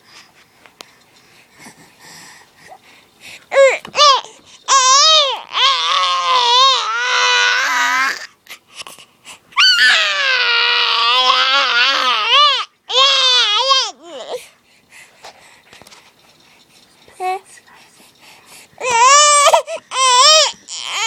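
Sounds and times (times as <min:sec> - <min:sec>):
baby wailing: 0:03.5 - 0:08.3, 0:09.6 - 0:14.4, 0:18.8 - 0:21.0.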